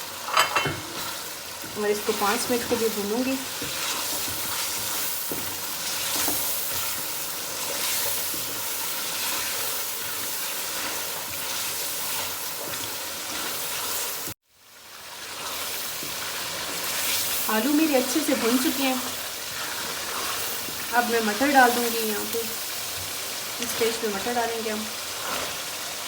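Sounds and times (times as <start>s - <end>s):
potatoes sizzling in oil: 0.0s - 26.0s.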